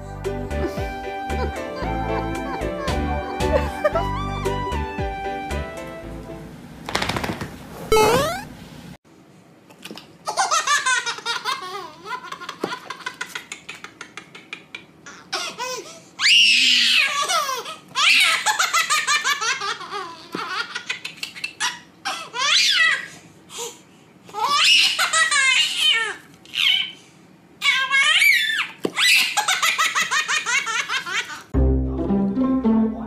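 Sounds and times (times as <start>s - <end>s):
young child giggling: 1.4s - 4.2s
child squealing laughs: 10.3s - 23.1s, 24.4s - 27.0s, 27.6s - 31.5s.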